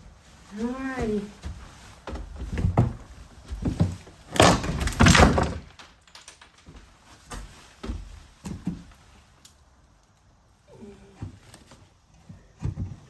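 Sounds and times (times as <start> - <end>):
light wooden thunks: 1.0 - 5.8, 6.6 - 8.9, 12.2 - 13.0
wood and debris crashing down: 3.6 - 6.8
wooden boards being pried: 3.8 - 5.8.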